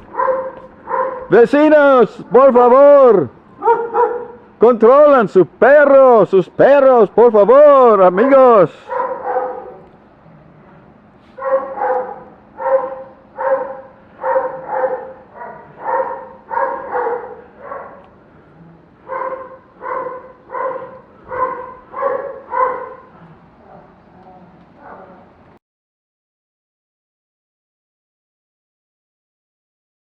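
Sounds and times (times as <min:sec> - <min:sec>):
dog barking: 0:00.0 - 0:01.4, 0:03.6 - 0:04.5, 0:08.8 - 0:09.9, 0:11.4 - 0:18.1, 0:19.0 - 0:24.0, 0:24.8 - 0:25.3.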